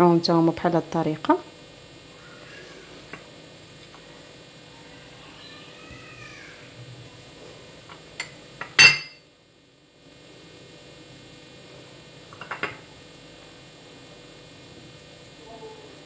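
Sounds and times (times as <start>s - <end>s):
utensils and dishes clinking: 8.2s - 9.2s.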